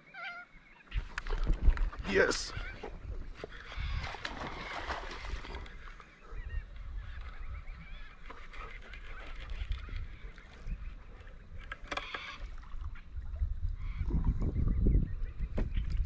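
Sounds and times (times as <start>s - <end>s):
birds chirping: 0.0s - 16.0s
water splashing: 3.5s - 6.2s.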